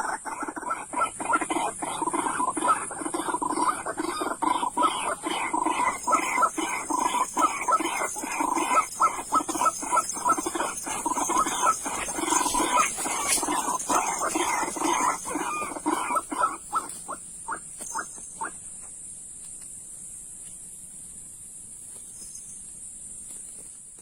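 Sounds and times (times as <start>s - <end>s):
birds calling: 0.0s - 19.0s.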